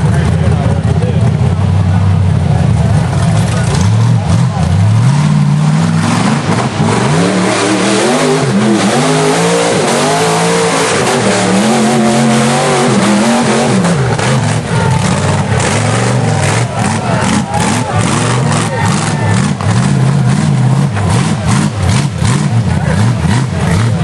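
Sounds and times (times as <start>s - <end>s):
buggy engine revving hard: 0.0s - 24.0s.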